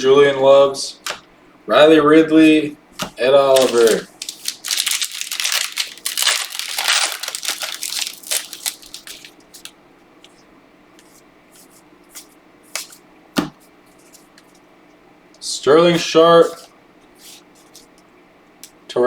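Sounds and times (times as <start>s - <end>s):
cards clicking: 3.0s - 9.7s
wrapper crinkling and tearing: 3.4s - 9.7s.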